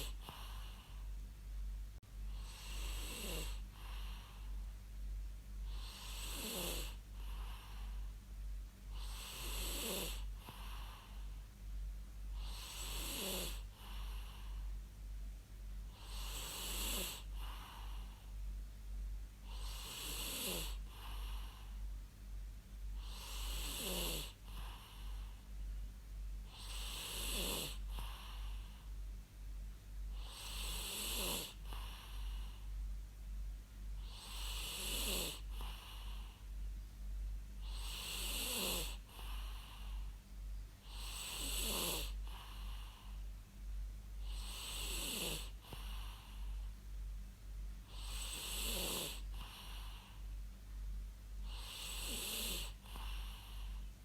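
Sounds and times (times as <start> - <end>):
steady low hum: 0.0 - 54.0
person snoring with wheezy tone: 2.3 - 4.4, 5.7 - 8.0, 8.9 - 11.2, 12.4 - 14.6, 16.0 - 18.2, 19.4 - 21.7, 23.0 - 25.3, 26.5 - 28.7, 30.1 - 32.6, 34.0 - 36.4, 37.6 - 40.0, 40.8 - 43.2, 44.2 - 46.6, 47.9 - 50.2, 51.4 - 53.8.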